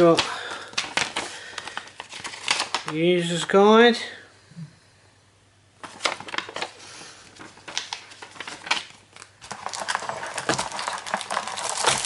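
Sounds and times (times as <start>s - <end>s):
plastic wrapping crinkling: 0.0s - 3.5s, 5.8s - 12.0s.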